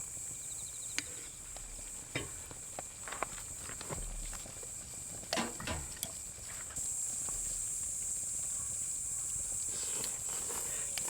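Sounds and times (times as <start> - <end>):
high-pitched insect chorus: 0.0 - 11.0.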